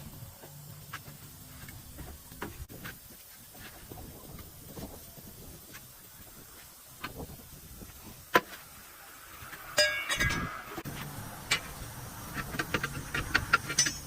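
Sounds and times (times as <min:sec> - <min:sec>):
ringing metallic clang: 0:09.7 - 0:10.8
steel clinking against steel: 0:09.7 - 0:10.8, 0:11.4 - 0:14.0.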